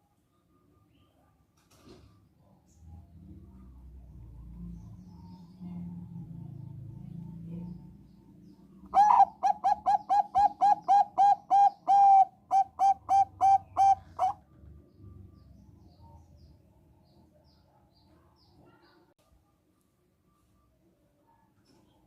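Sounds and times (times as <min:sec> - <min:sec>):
dove cooing: 0:08.9 - 0:14.4.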